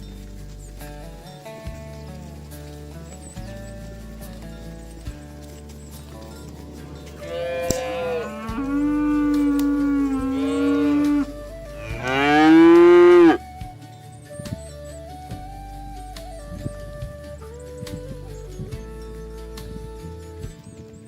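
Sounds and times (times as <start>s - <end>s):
faint background music: 0.0s - 21.0s
cattle mooing: 6.8s - 13.4s.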